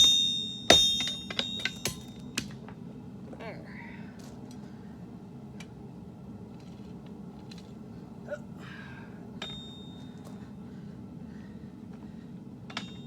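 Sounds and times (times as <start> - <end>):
sharp ringing tap: 0.0 - 2.2, 9.4 - 10.0
low workshop hum: 0.0 - 13.0.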